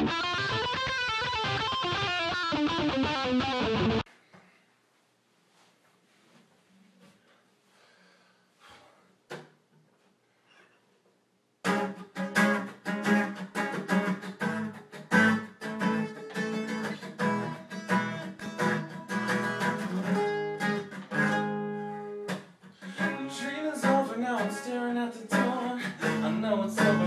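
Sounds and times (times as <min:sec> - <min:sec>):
acoustic guitar strumming: 0:11.6 - 0:27.0.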